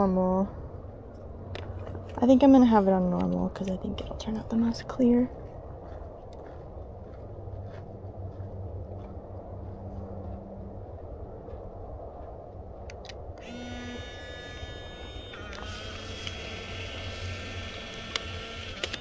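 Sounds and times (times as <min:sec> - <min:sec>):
low rumble: 0:00.0 - 0:13.7
camera motor whirring: 0:12.9 - 0:19.0
camera shutter clicks: 0:13.0 - 0:19.0.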